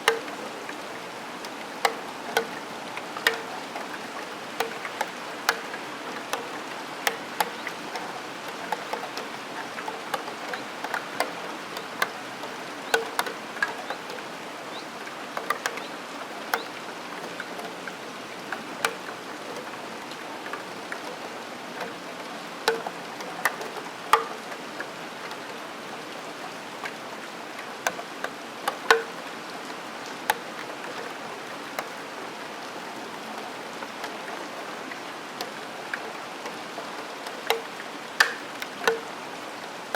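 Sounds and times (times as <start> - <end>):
drops ticking on steel sill: 0.0 - 0.8, 1.4 - 14.8, 15.4 - 15.9, 22.6 - 24.5, 28.7 - 29.2, 37.2 - 39.1
rain hissing: 0.0 - 39.9.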